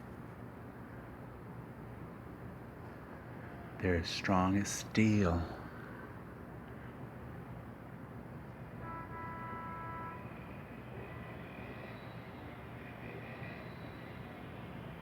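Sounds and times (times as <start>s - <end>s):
distant vehicle rumble: 2.6s - 7.2s.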